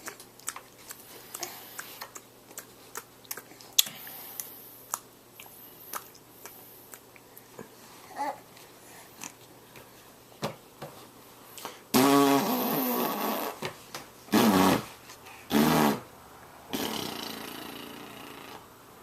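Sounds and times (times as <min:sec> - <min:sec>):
faint mouth clicks: 0:00.0 - 0:07.5
pitched lip buzzes: 0:11.9 - 0:13.6, 0:14.3 - 0:14.9, 0:15.5 - 0:16.1, 0:16.7 - 0:18.7.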